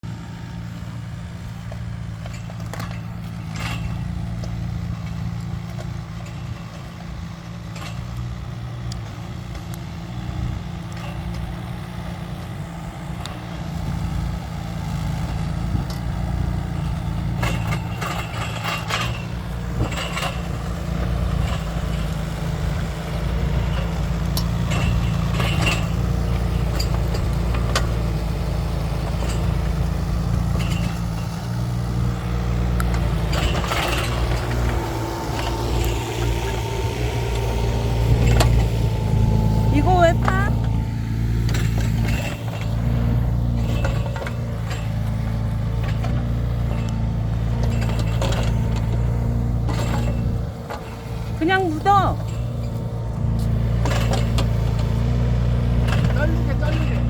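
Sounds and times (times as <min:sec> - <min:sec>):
excavator diesel engine running: 0:00.0 - 0:57.0
machine knocks and clanks: 0:14.7 - 0:57.0.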